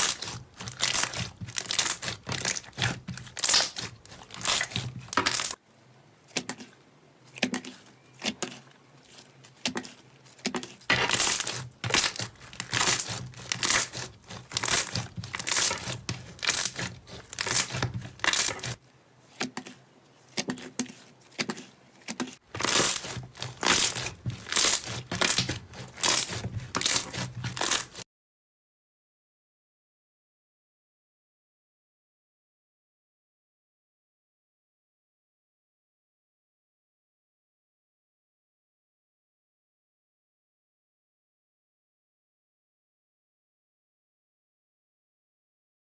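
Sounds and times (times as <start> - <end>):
slime squelching and popping: 0.0 - 5.6, 7.4 - 18.8, 22.5 - 28.0.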